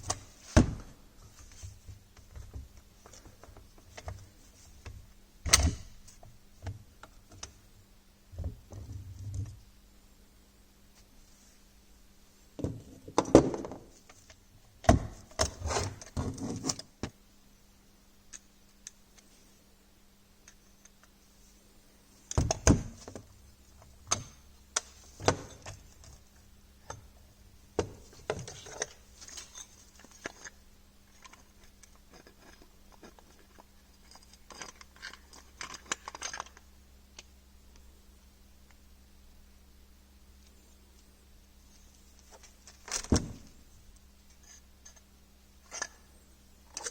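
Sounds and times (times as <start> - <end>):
faint steady hum: 0.0 - 46.9
metal parts clinking and knocking: 31.1 - 36.6.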